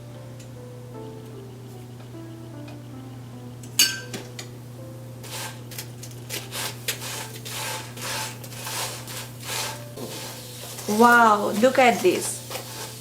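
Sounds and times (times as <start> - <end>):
flatbread frying in oil: 5.2 - 13.0
short scraping strokes: 6.5 - 11.0.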